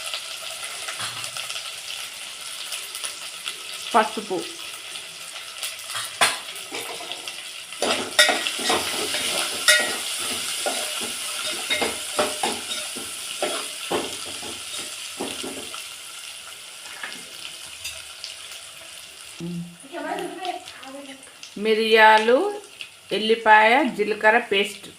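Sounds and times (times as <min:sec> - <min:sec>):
onions sizzling in hot oil: 0:00.0 - 0:24.9
spoon scraping against pan: 0:06.7 - 0:14.0.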